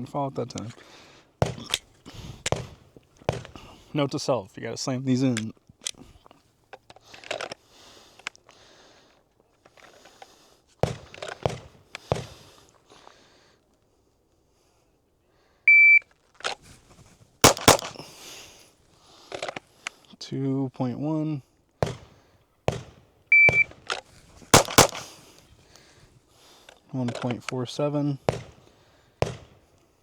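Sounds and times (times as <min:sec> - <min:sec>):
pistol handling clicks and knocks: 0:01.4 - 0:03.7, 0:06.7 - 0:07.6, 0:10.8 - 0:12.4, 0:17.4 - 0:18.1, 0:21.8 - 0:25.5
pistol shots: 0:17.4 - 0:18.2, 0:21.8 - 0:23.9, 0:24.5 - 0:25.3, 0:28.3 - 0:29.8
shot timer beep: 0:23.3 - 0:23.7.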